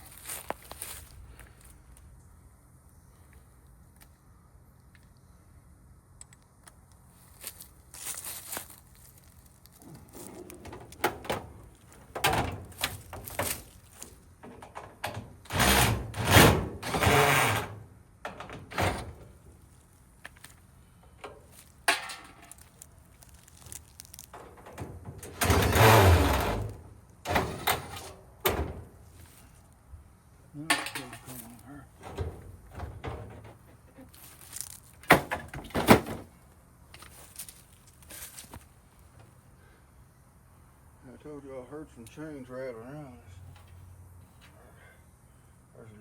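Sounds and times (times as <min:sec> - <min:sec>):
sheet metal knocks and scrapes: 0:32.0 - 0:33.8.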